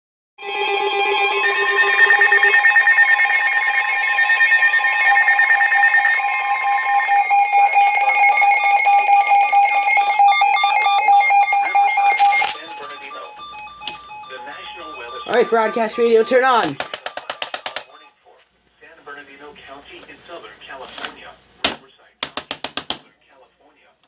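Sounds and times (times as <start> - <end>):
warbling electronic alert tones: 0.4 - 18.1.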